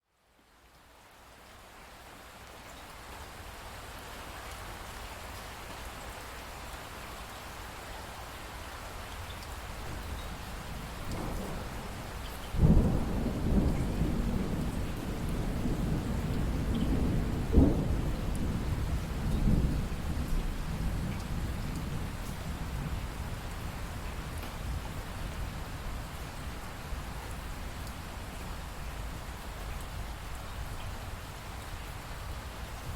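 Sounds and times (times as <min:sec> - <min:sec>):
steady rain: 0:00.0 - 0:32.9
thunder rumbling: 0:09.9 - 0:23.0.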